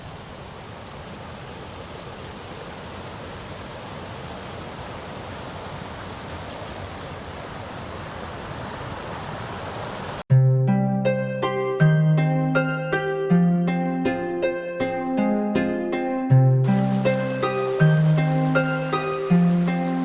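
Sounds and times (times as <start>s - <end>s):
water rushing over small waterfalls: 0.0s - 10.2s, 16.6s - 20.0s
plucked harp-like music: 10.3s - 20.0s.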